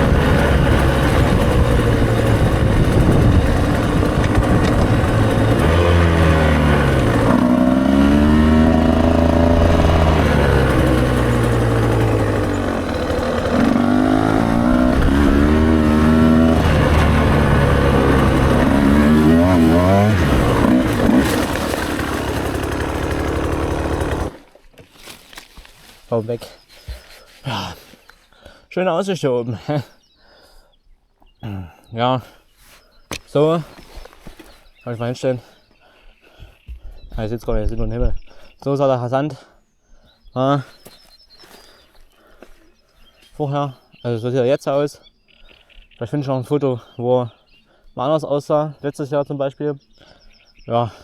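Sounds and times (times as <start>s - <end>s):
motorcycle engine revving hard: 0.0s - 24.4s.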